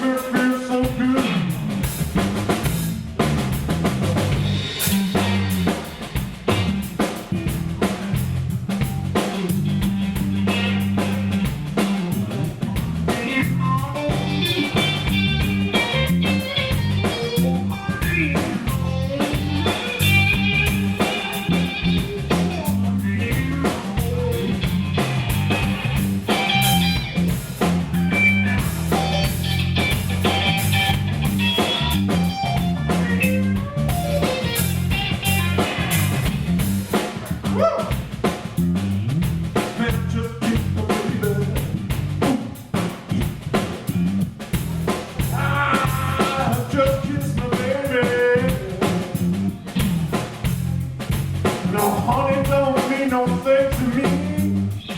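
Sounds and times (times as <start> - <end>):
bass: 0.0 - 54.9
drum kit beat: 0.0 - 54.9
guitar lead line: 4.3 - 38.0.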